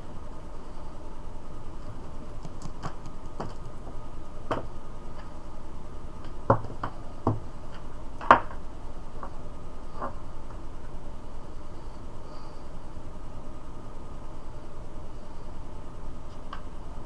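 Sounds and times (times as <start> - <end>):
light clicks and taps: 2.2 - 3.7.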